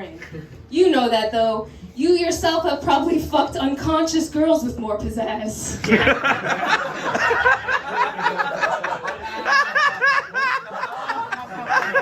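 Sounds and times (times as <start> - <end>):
audience laughing and whooping: 5.8 - 12.0.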